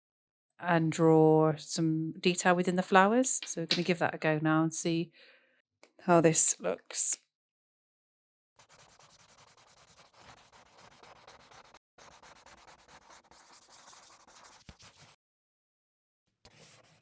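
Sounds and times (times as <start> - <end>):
pen scratching on paper: 8.6 - 15.2, 16.4 - 17.0.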